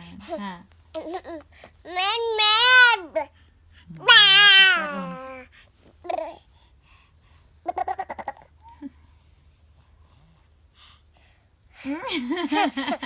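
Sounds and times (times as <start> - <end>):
baby babbling: 1.0 - 3.3, 4.0 - 6.4
baby squealing: 4.1 - 5.4.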